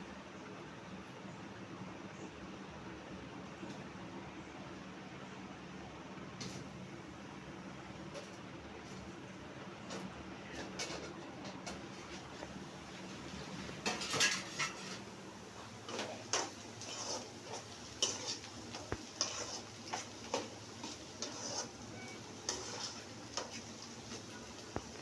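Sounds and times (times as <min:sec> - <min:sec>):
faint sizzle: 0:00.0 - 0:25.0
spoon scraping a pot: 0:09.9 - 0:12.5, 0:13.5 - 0:24.4.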